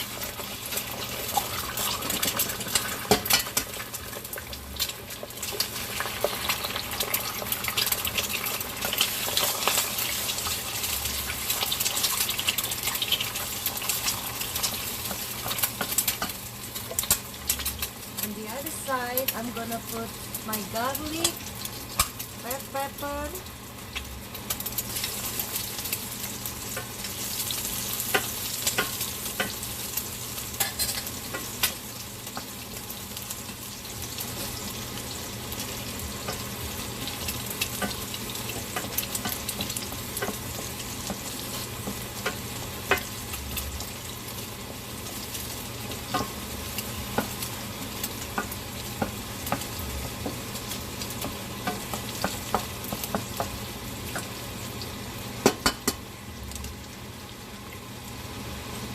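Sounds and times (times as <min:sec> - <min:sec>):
food sizzling in a frying pan: 0:00.0 - 0:58.9
utensil tapping and scraping pan: 0:51.2 - 0:54.3.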